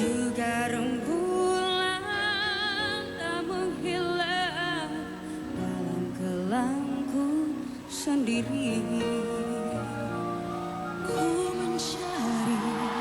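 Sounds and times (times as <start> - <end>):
soft instrumental backing: 0.0 - 13.0
woman singing a slow ballad: 0.0 - 13.0.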